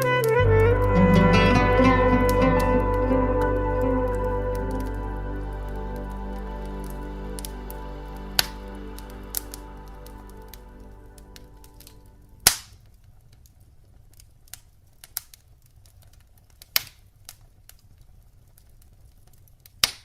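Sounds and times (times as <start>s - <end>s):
clarinet note: 0.0s - 12.4s
fire popping: 0.0s - 20.0s
wood fire crackling: 0.0s - 20.0s.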